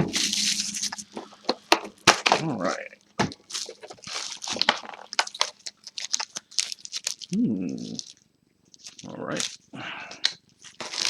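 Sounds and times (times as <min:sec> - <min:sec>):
plastic wrap and foil tearing: 0:03.5 - 0:09.6, 0:10.2 - 0:11.0.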